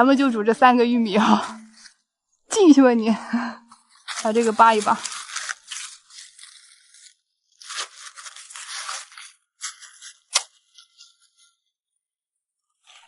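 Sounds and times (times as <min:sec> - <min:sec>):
corn husks ripping: 0:03.8 - 0:11.0.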